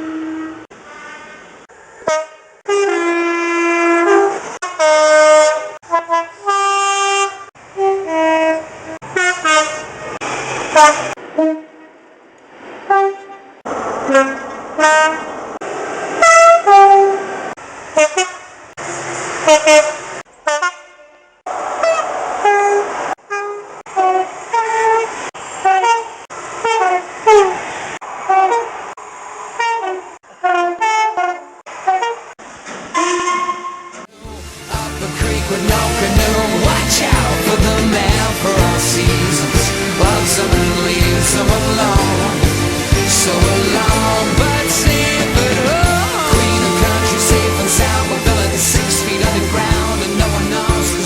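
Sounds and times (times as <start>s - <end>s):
two-tone train horn: 0.0s - 12.1s, 12.9s - 15.3s, 16.2s - 17.4s, 18.0s - 18.5s, 19.4s - 27.6s, 28.2s - 28.8s, 29.6s - 51.0s.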